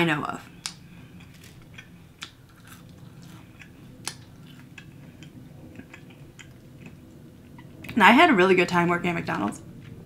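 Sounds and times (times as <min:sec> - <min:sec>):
person chewing food: 0:00.5 - 0:08.0.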